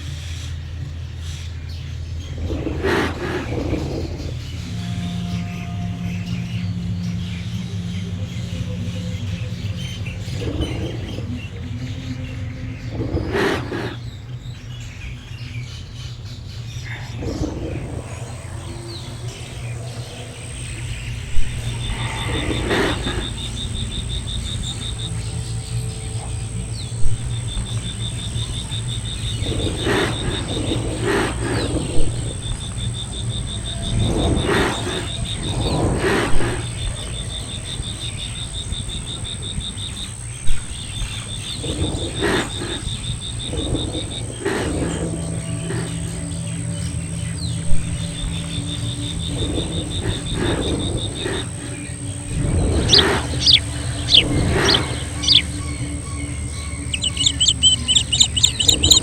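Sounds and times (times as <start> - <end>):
steady low rumble: 0.0 - 59.0
low animal call: 1.6 - 14.7, 16.6 - 59.0
insect trilling: 16.9 - 59.0.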